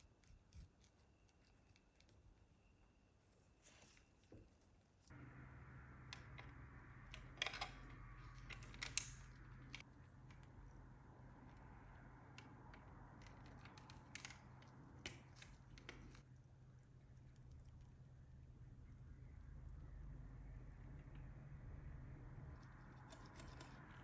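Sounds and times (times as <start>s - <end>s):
steady low hum: 5.0s - 24.0s.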